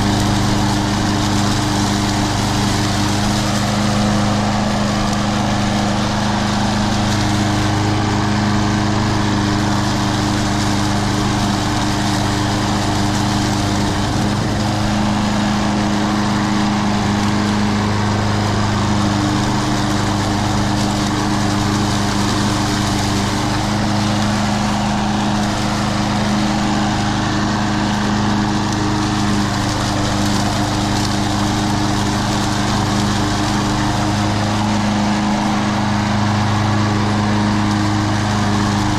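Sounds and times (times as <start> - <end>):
lawn mower engine running: 0.0 - 38.9.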